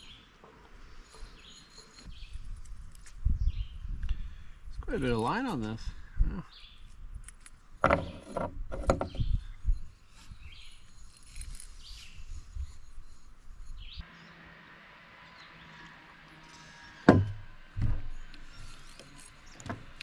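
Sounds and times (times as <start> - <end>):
sharp knocks: 17.1 - 18.1.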